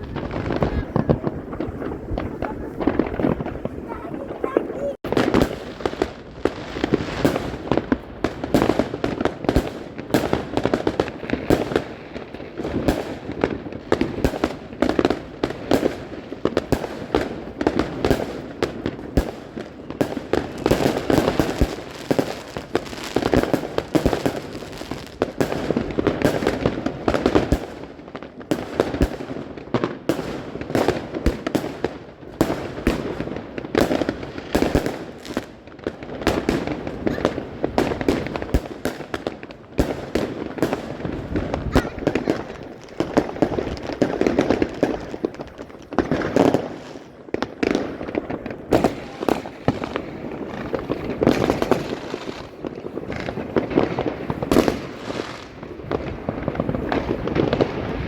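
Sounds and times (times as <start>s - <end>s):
fireworks bangs and crackling: 0.0s - 58.0s.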